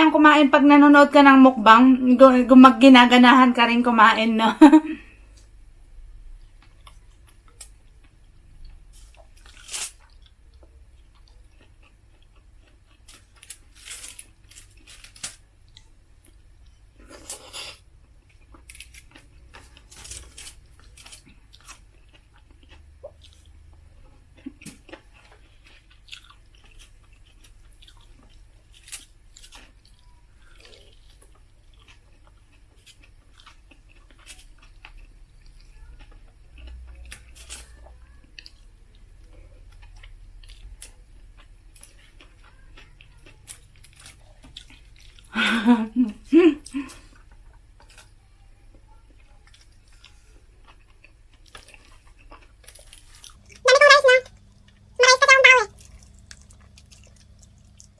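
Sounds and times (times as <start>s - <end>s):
chewing and crunching food: 5.0s - 57.9s
low steady hum: 49.4s - 57.9s.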